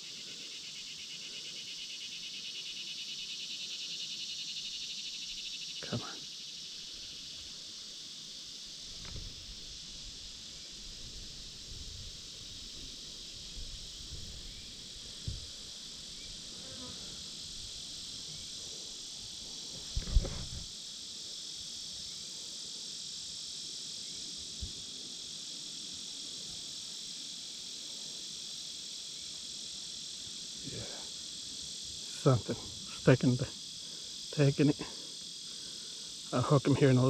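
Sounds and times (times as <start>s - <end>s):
insect chorus buzzing: 0.0s - 37.0s
dull thump: 19.9s - 20.6s.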